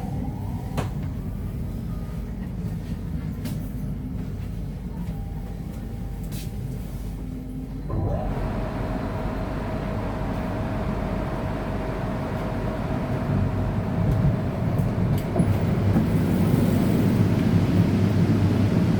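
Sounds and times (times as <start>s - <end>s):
electric train rumbling: 0.0s - 18.9s.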